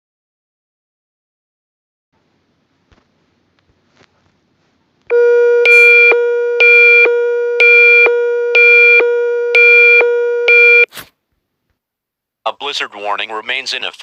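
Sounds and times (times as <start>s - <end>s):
pulsing electronic alert tone: 5.1s - 10.9s.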